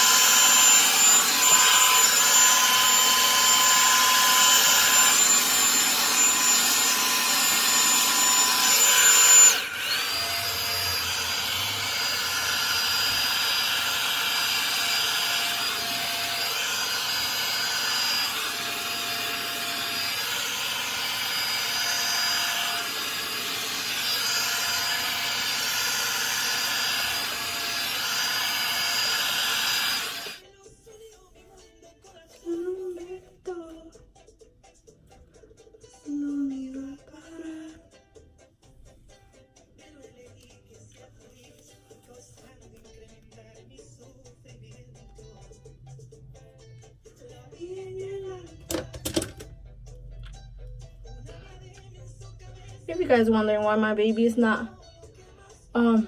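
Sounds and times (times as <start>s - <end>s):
hot-air brush dryer whine: 0.0s - 30.4s.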